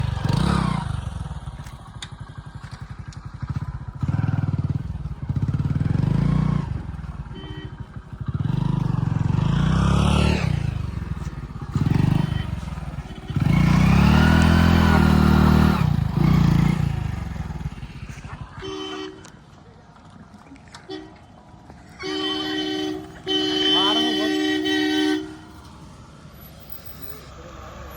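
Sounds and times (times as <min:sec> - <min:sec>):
motorcycle engine revving: 0:00.0 - 0:20.1.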